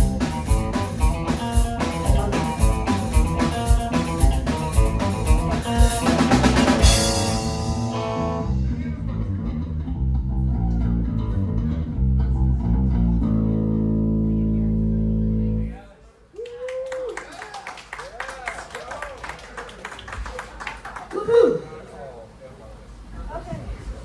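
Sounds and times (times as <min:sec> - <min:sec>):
live rock band playing: 0:00.0 - 0:15.7
cymbal crash: 0:05.8 - 0:08.6.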